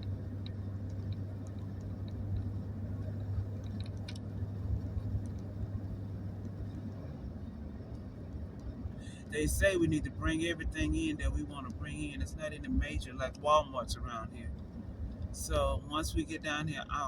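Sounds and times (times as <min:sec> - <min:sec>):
faint small clicks: 0:00.0 - 0:09.2
vehicle cabin rumble: 0:00.0 - 0:17.0.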